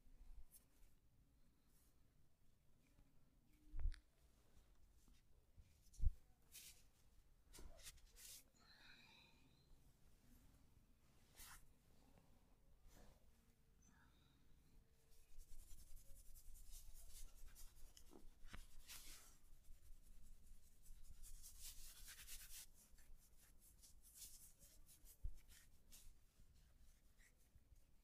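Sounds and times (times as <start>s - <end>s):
hands rubbing skin and clothing: 4.6s - 8.5s, 11.2s - 11.7s, 15.1s - 28.0s.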